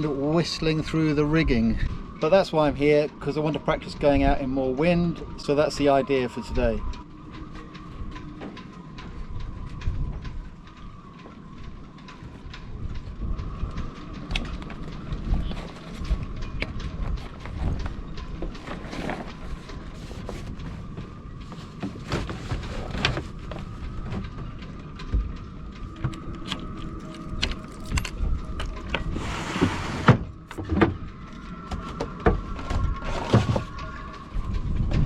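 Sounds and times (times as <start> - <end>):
wind rumbling on microphone: 0.0 - 35.0
wind whistling through rigging: 0.0 - 35.0
rigging knocks and clatters: 20.9 - 29.1.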